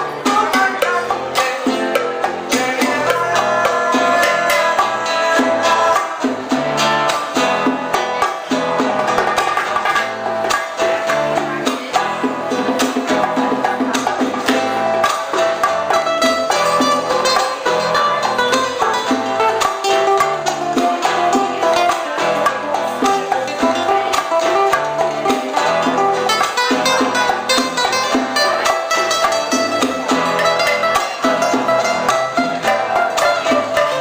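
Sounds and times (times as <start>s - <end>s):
live cuban band music: 0.0s - 34.0s.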